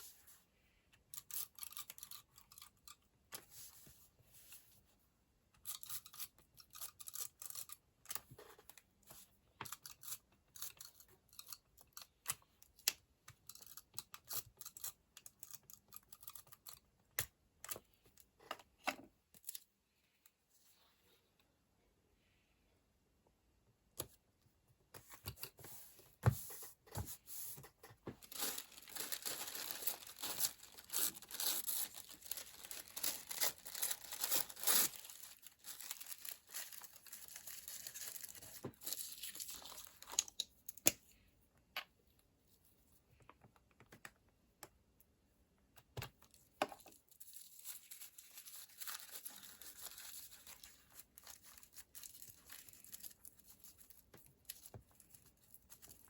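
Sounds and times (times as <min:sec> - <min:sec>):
paper tearing and crinkling: 0:28.2 - 0:38.5.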